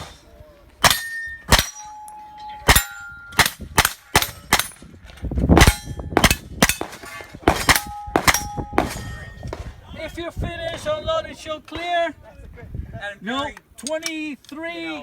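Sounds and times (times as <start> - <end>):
steel plate ringing: 0.8 - 4.8, 7.5 - 9.4.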